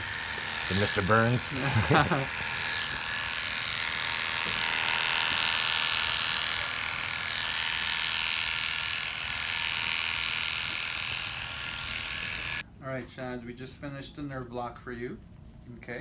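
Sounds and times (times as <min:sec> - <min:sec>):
electric hair clippers buzzing: 0:00.0 - 0:12.6.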